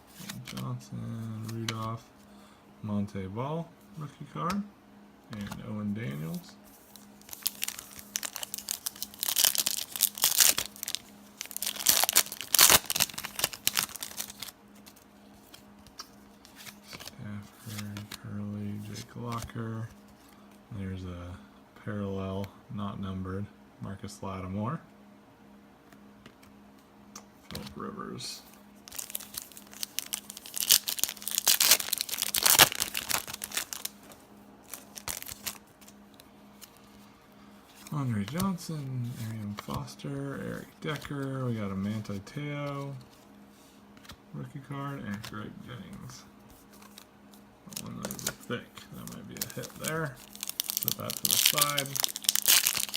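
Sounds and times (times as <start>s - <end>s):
cards rustling: 0.0s - 2.1s, 5.3s - 20.4s, 28.4s - 37.1s, 37.7s - 52.9s
wrapper tearing and crinkling: 6.9s - 15.0s, 28.8s - 35.6s, 49.0s - 52.9s.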